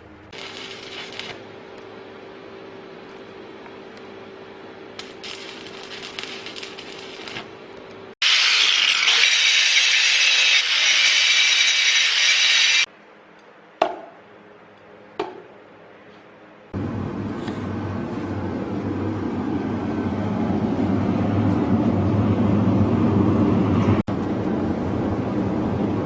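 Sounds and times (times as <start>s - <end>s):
power tool grinding steel: 8.2s - 12.9s.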